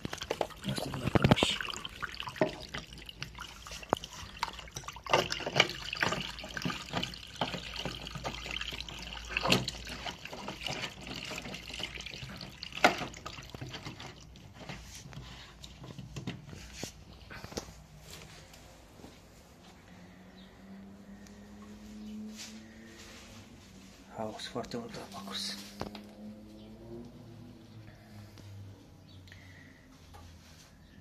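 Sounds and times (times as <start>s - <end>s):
sharp splashes and knocks: 0.0s - 14.6s
water running and splashing: 0.0s - 16.0s.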